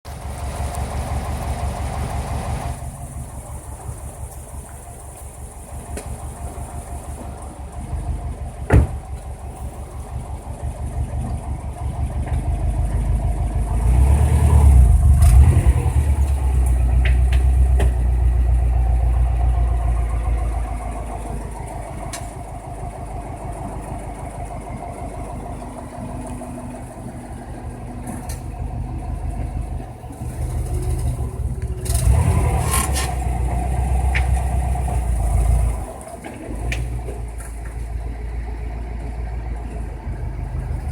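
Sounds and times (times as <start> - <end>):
car engine running: 0.1 - 40.9
sharp pops from car: 8.7 - 9.0.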